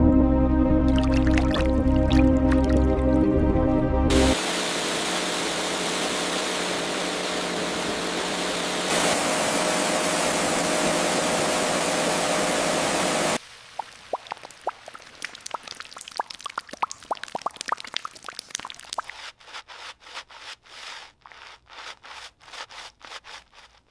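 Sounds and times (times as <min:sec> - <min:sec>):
small wet pops and drips: 0:00.9 - 0:02.9, 0:13.6 - 0:19.2
pressure washer spraying water: 0:04.1 - 0:13.4.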